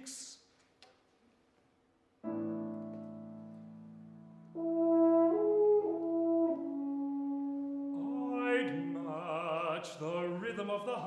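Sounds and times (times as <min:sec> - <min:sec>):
french horn playing long notes: 0:04.5 - 0:09.8.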